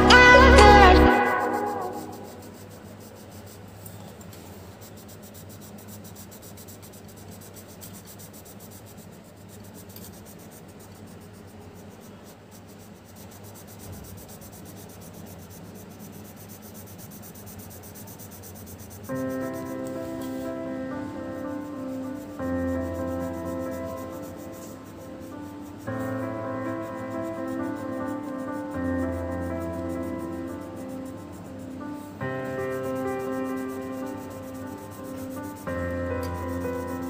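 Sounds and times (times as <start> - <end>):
music: 0.0 - 2.8, 19.1 - 37.0
pencil scratching on paper: 0.0 - 37.0.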